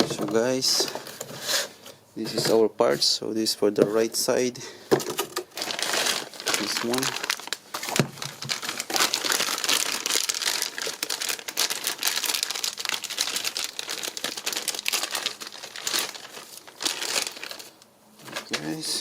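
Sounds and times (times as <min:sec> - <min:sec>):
packaging crinkling: 0:05.4 - 0:18.8.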